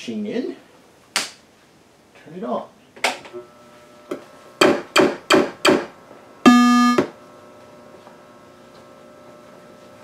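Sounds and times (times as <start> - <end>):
faint steady hum: 0.0 - 10.0
pinball machine sharp clacks: 4.6 - 5.9
electronic ding: 6.5 - 7.1.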